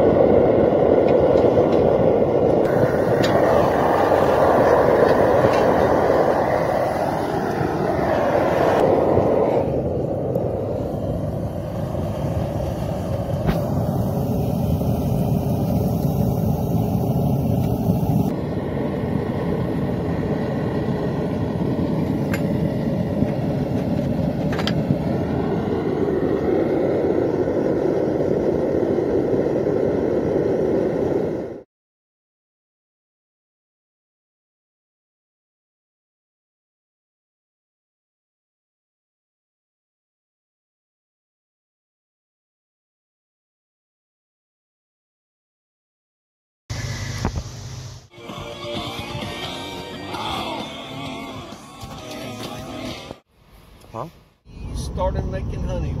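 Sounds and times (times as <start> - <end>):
propane burner roaring: 0.0 - 31.7, 46.7 - 56.0.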